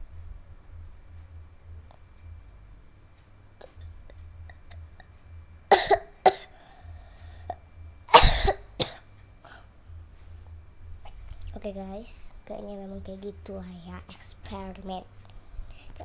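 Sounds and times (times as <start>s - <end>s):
person coughing: 5.7s - 6.6s, 8.1s - 9.0s.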